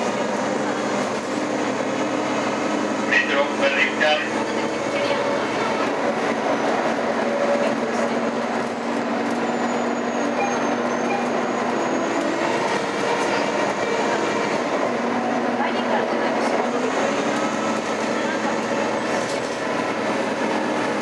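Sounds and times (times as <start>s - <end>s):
bus drivetrain and road noise: 0.0s - 21.0s.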